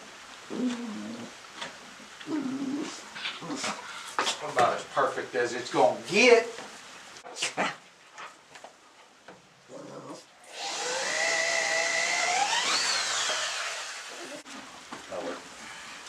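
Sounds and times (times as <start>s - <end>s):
power drill motor whine: 10.5s - 14.4s.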